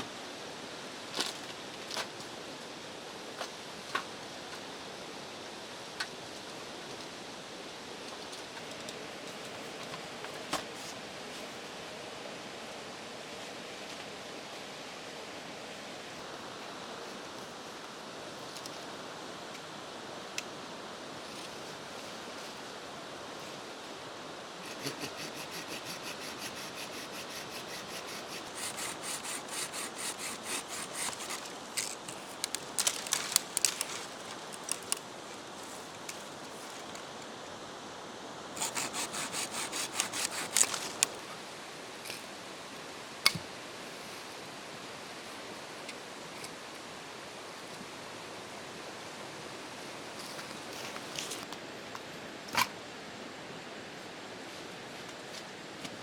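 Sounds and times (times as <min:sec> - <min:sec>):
steady background hiss: 0:00.0 - 0:56.0
rhythmic rasping strokes: 0:24.6 - 0:35.0, 0:38.6 - 0:41.2.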